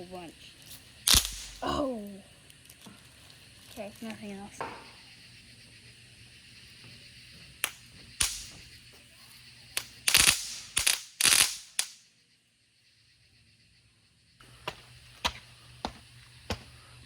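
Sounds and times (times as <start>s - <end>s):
firework bangs: 1.0s - 1.6s, 6.8s - 12.0s.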